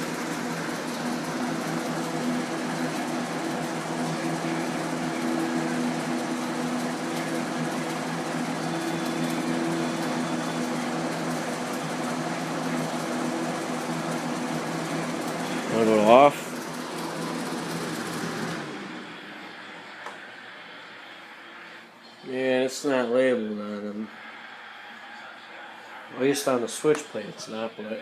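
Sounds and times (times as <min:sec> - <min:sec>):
box fan air rush: 0:00.0 - 0:21.7
fan motor hum: 0:00.0 - 0:28.0.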